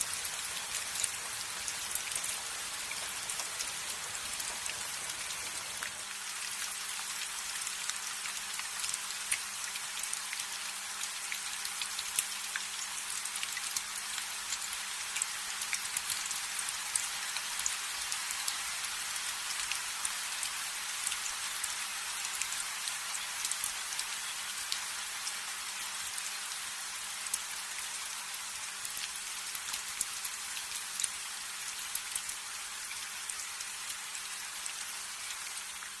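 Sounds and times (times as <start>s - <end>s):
raindrops ticking: 0.0s - 6.1s
steady rain falling: 0.0s - 36.0s.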